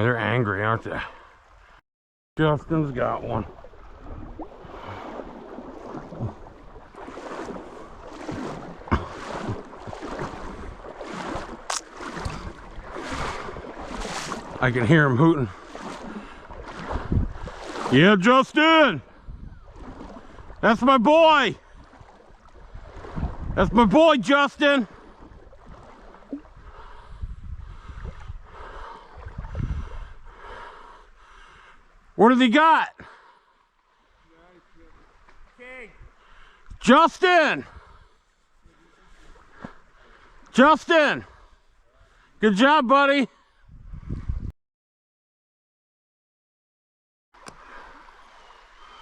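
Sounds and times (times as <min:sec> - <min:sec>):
creek water rushing: 0:02.4 - 0:26.4, 0:38.8 - 0:41.3, 0:47.4 - 0:49.0
wind buffeting microphone: 0:03.2 - 0:14.8, 0:15.5 - 0:17.9, 0:19.0 - 0:20.6, 0:21.6 - 0:23.9, 0:24.9 - 0:30.5, 0:43.6 - 0:44.5
sharp click: 0:11.7 - 0:11.9.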